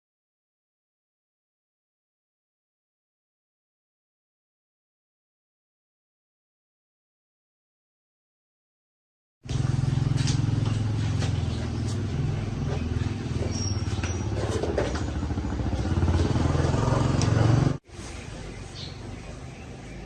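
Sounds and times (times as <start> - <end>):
motorcycle engine running: 9.5 - 17.8.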